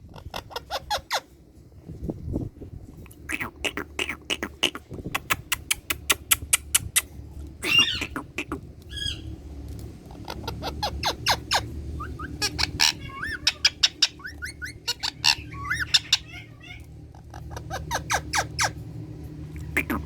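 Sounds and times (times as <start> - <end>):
parrot squawk: 0.2 - 1.3, 7.6 - 9.3, 10.2 - 18.8, 19.6 - 20.0
parrot clicks and chirps: 5.1 - 8.5.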